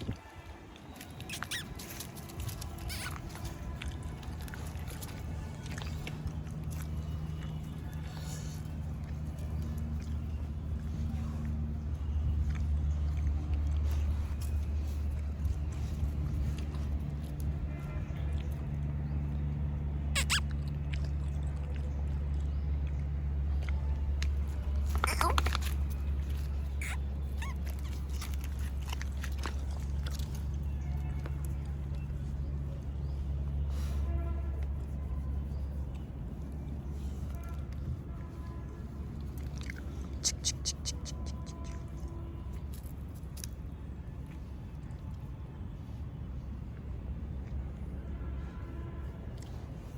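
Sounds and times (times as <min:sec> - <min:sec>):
low steady hum: 0:00.0 - 0:49.9
high-pitched animal squeaks: 0:01.0 - 0:03.4, 0:20.1 - 0:20.6, 0:25.0 - 0:25.6, 0:26.6 - 0:28.3, 0:40.2 - 0:41.8
steady low rumble: 0:01.6 - 0:49.9
dog whining: 0:26.8 - 0:28.0.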